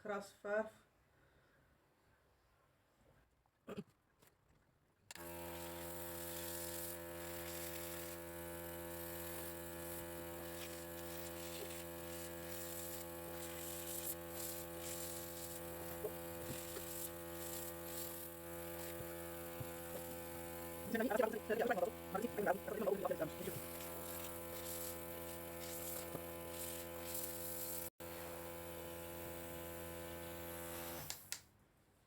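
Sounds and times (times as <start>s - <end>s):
compressor buzzing hum: 5.1s - 31.3s
airbrush hissing: 5.5s - 28.0s.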